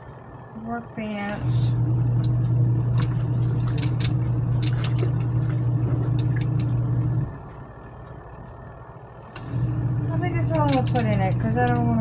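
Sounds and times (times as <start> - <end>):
washing machine motor humming: 0.0 - 12.0
water sloshing: 1.6 - 8.2.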